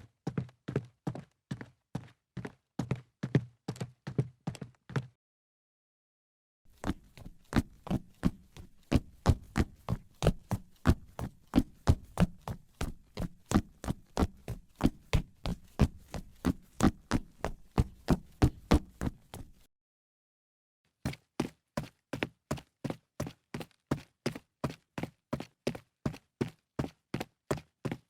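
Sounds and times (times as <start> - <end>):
footsteps on a hard surface: 6.7 - 19.7.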